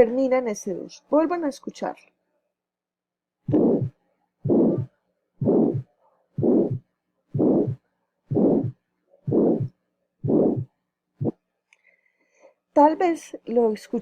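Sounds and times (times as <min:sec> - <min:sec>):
whooshing heart murmur: 0:03.5 - 0:06.8, 0:07.4 - 0:11.4
heartbeat: 0:03.5 - 0:11.4.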